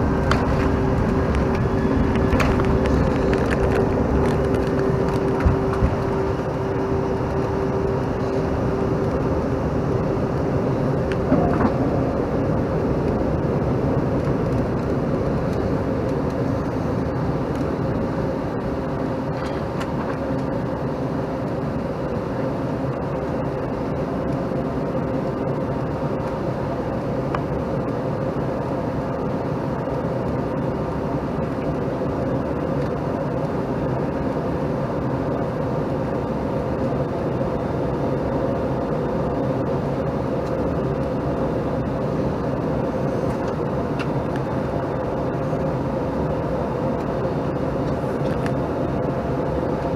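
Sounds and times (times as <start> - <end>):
jet engine drone in cabin: 0.0 - 49.9.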